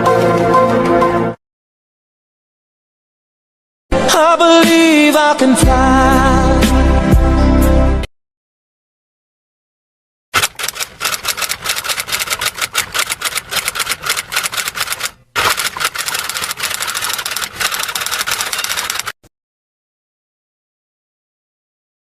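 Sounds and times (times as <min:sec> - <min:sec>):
rapid keyboard typing: 0:10.4 - 0:19.2.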